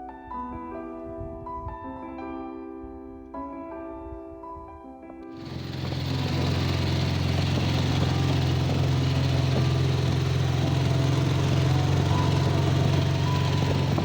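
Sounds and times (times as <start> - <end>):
motorcycle engine running: 5.4 - 14.0.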